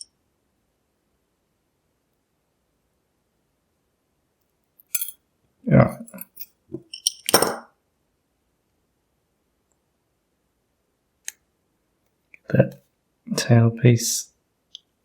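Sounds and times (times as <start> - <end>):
metal lock parts clinking: 4.9 - 5.2, 5.8 - 7.6.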